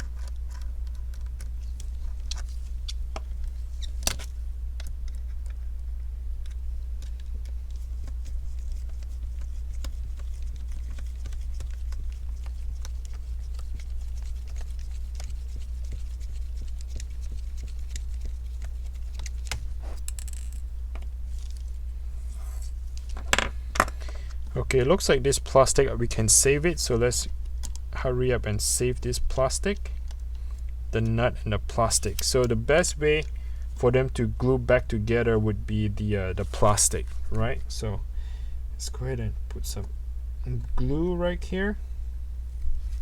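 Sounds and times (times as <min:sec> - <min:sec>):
low electrical hum: 0:00.0 - 0:43.0
small parts clicking and tapping: 0:16.8 - 0:21.1.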